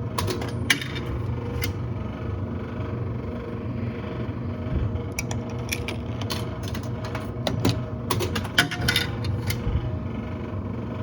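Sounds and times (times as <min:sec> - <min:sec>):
steady low hum: 0:00.0 - 0:11.0
coins clinking through machine: 0:00.1 - 0:01.8, 0:05.2 - 0:09.6.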